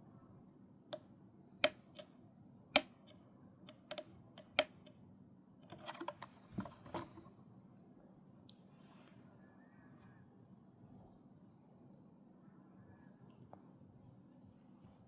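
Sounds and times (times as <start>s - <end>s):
sharp clicks and taps: 0.9s - 2.1s, 2.8s - 5.0s.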